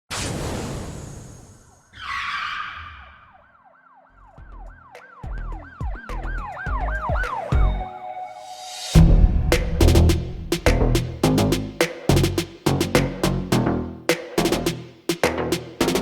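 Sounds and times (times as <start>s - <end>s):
siren-like wail: 1.7s - 9.0s
whoosh: 8.4s - 11.2s
low bass hits: 9.0s - 13.6s.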